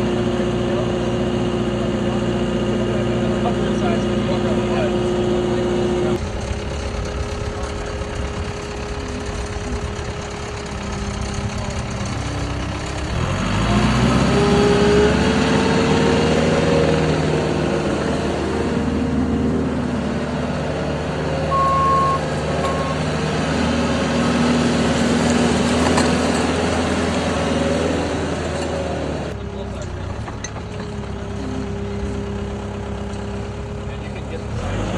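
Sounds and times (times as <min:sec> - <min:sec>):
diesel engine idling and revving: 0:00.0 - 0:34.9
short high warning beeps: 0:21.5 - 0:23.1.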